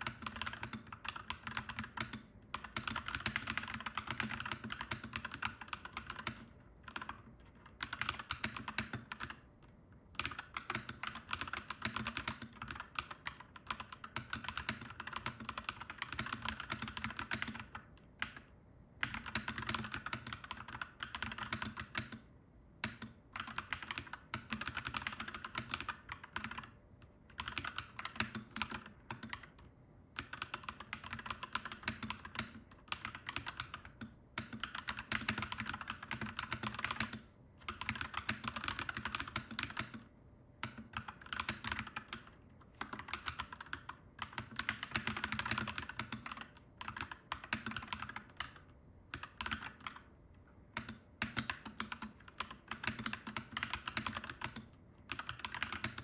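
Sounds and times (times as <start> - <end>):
mechanical keyboard typing: 0.0 - 9.5, 10.1 - 50.1, 50.7 - 56.0.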